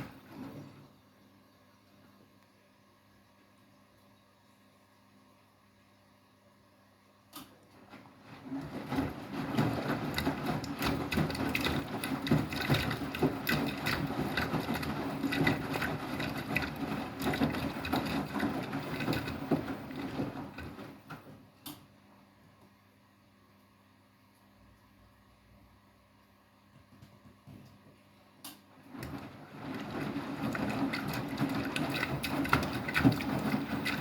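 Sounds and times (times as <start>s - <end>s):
washing machine rattling: 0.0s - 0.9s, 7.8s - 21.5s, 28.7s - 34.0s.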